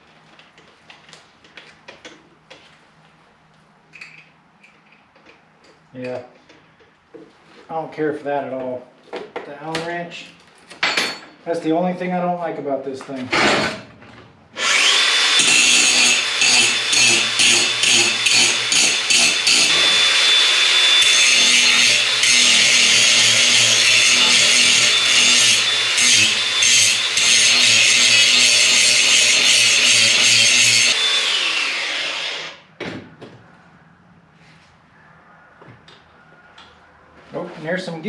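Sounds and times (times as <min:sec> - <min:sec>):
angle grinder cutting steel: 0:14.6 - 0:32.6.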